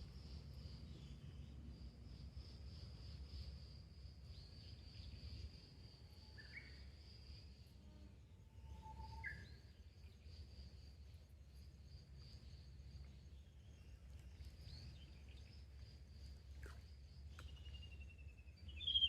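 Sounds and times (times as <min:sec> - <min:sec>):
insect trill: 0:00.0 - 0:19.0
bird chirps: 0:17.4 - 0:19.0.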